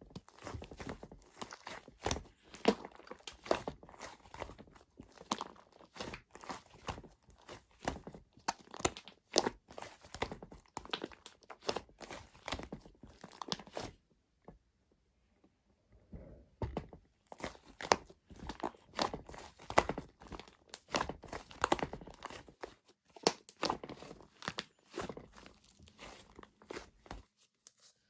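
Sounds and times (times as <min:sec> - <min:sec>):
shaving foam crunching and crackling: 0:00.1 - 0:14.0, 0:17.3 - 0:28.0.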